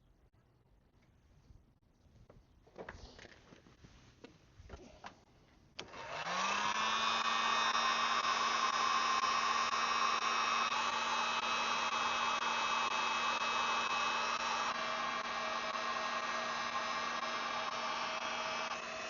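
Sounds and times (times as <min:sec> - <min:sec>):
heat gun fan whirring: 0:05.8 - 0:19.0.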